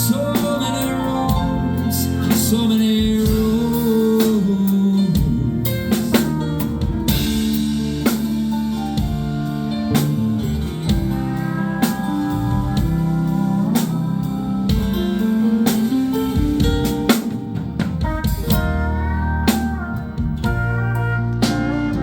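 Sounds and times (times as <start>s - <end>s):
live rock band playing: 0.0s - 22.0s
drum hits: 16.2s - 22.0s.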